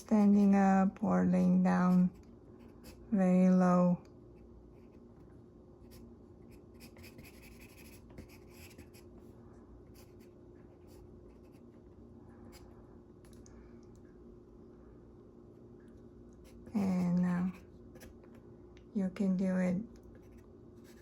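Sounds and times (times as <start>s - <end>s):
steady low hum: 0.0s - 21.0s
pencil scratching on paper: 5.8s - 9.1s.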